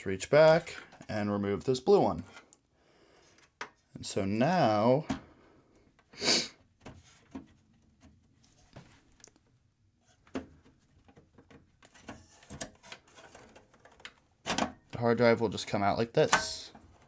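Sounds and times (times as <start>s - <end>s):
plastic and metal clicks and knocks: 10.3s - 15.0s.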